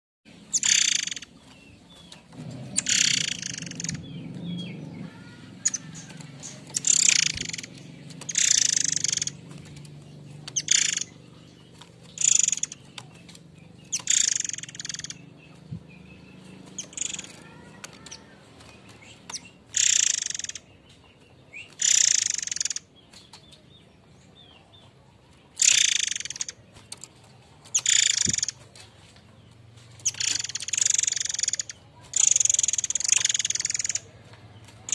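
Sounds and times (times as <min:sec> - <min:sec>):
bird giving rasping screeches: 0:02.4 - 0:04.0, 0:04.9 - 0:07.7, 0:08.3 - 0:09.4.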